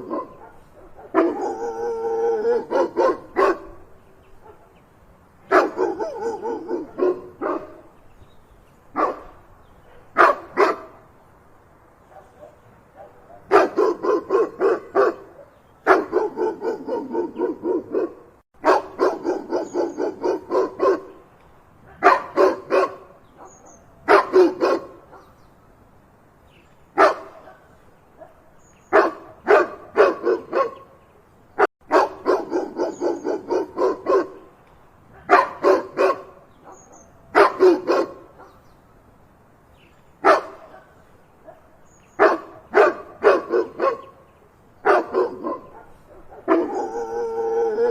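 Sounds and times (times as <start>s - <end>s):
dog barking loudly: 0.0s - 3.8s, 5.5s - 7.9s, 9.0s - 11.0s, 12.1s - 21.2s, 21.9s - 25.3s, 27.0s - 30.9s, 31.8s - 34.5s, 35.2s - 38.6s, 40.2s - 44.2s, 44.8s - 47.9s.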